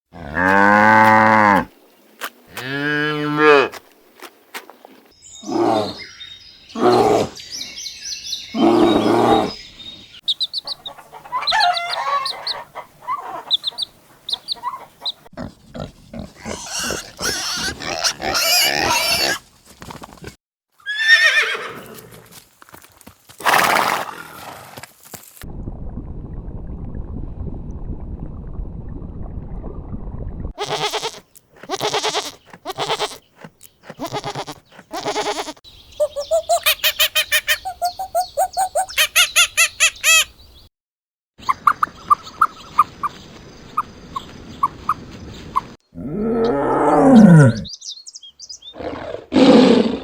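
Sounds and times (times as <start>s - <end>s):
animal calls: 10.3s - 15.2s, 33.8s - 40.3s
high chirps: 35.9s - 40.2s.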